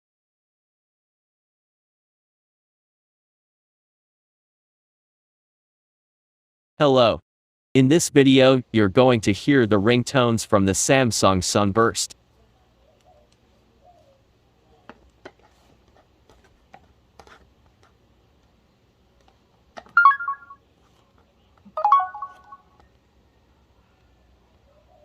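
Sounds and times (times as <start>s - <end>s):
electronic phone chirps: 20.0s - 20.6s, 21.8s - 22.8s.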